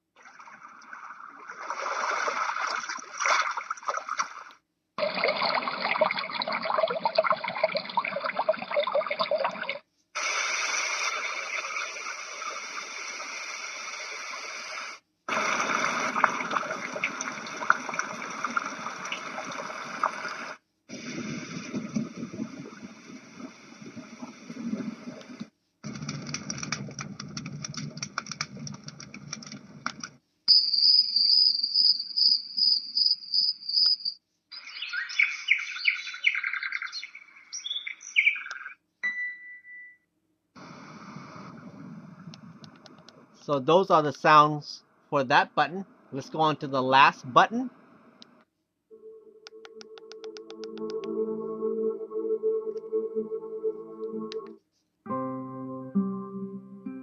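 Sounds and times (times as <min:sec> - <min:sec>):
crackly noise with clicks: 0:06.3 - 0:30.2, 0:38.4 - 0:38.8, 0:40.6 - 0:48.6, 0:49.4 - 0:51.2
bird chirps: 0:30.5 - 0:40.0.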